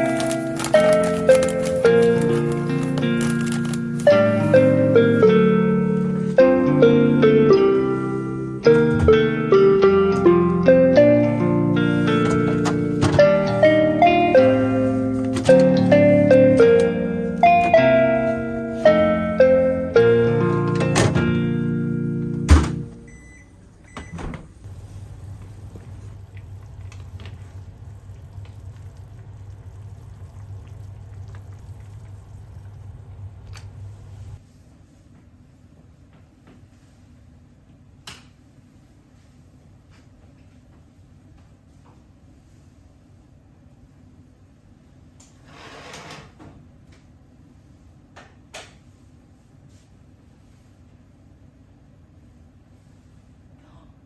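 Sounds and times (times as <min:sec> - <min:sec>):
steady low hum: 0:21.4 - 0:34.4.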